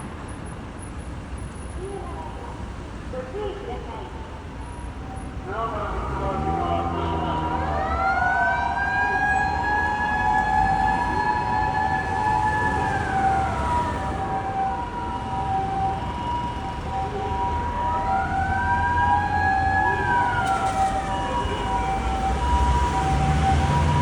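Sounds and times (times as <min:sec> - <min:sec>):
traffic rumble: 0:00.0 - 0:24.0
police siren wailing: 0:05.5 - 0:24.0
ambulance two-tone siren: 0:05.6 - 0:24.0.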